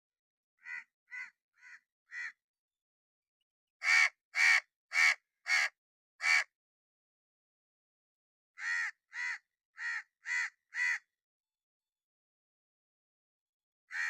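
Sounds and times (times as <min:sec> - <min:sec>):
crow cawing: 0:00.6 - 0:02.4, 0:03.8 - 0:06.5, 0:08.6 - 0:11.1.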